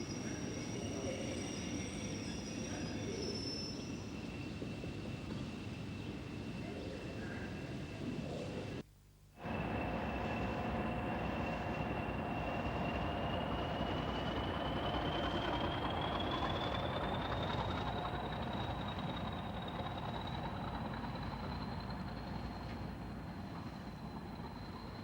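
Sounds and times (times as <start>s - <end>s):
train rumbling: 9.4s - 25.0s.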